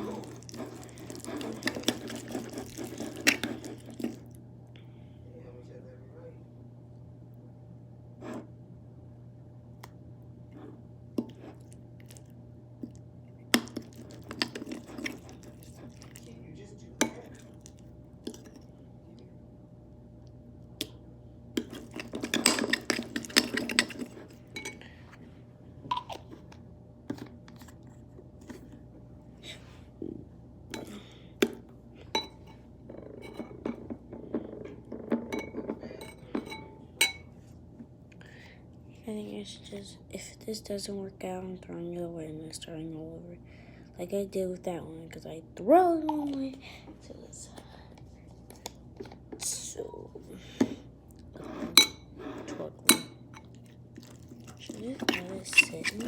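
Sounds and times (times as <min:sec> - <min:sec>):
utensil clinking against bowls: 0:00.0 - 0:04.2, 0:17.0 - 0:17.6, 0:21.6 - 0:24.8, 0:30.8 - 0:37.3, 0:51.5 - 0:56.0
steady low hum: 0:00.0 - 0:56.0.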